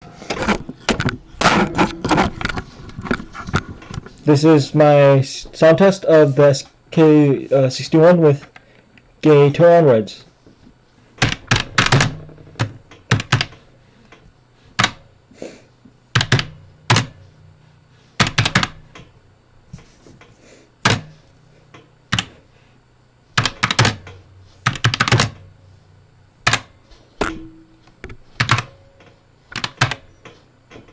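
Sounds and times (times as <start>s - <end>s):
keyboard keys clacking: 11.2s - 13.6s, 16.2s - 17.2s, 23.4s - 25.4s.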